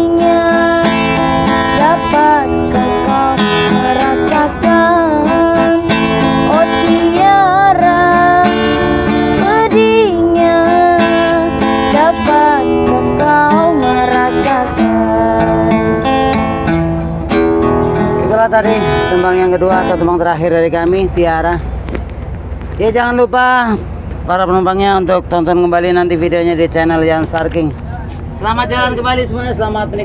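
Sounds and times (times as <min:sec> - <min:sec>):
woman singing a slow ballad: 0:00.0 - 0:16.1
strummed acoustic guitar: 0:00.0 - 0:20.8.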